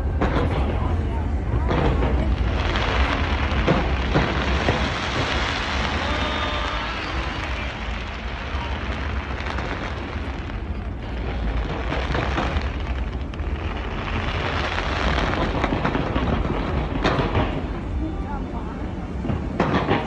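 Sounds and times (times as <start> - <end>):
fireworks booms and crackling: 0.0 - 18.3, 19.2 - 20.0
sharp firework bang: 1.6 - 17.8.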